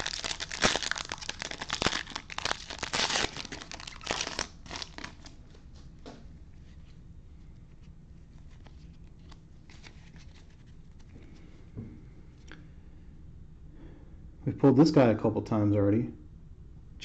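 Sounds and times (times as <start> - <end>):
plastic foil wrapper crinkling: 0.0 - 5.4.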